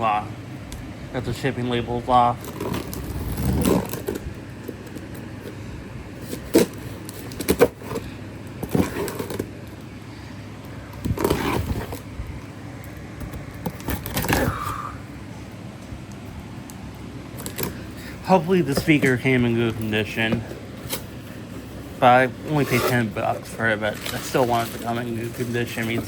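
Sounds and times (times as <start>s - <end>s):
steady low hum: 0.0s - 26.0s
cardboard box scraping and rustling: 2.4s - 4.3s, 6.2s - 9.6s, 11.0s - 12.1s, 22.5s - 26.0s.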